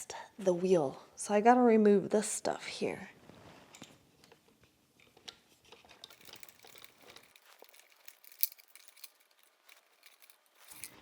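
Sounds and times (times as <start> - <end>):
packaging crinkling and rustling: 5.8 - 11.0.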